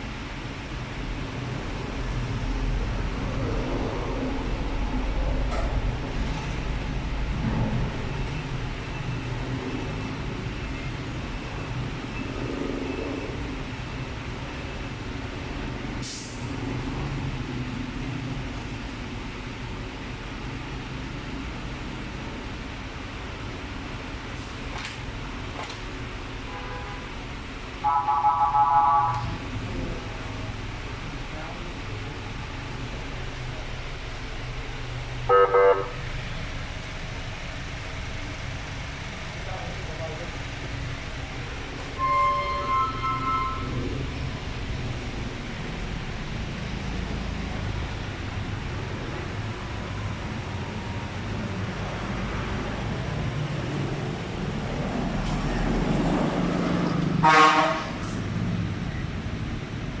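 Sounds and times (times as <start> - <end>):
vehicle horn toots: 27.8 - 29.3, 35.3 - 36.0, 42.0 - 43.8, 57.2 - 58.0.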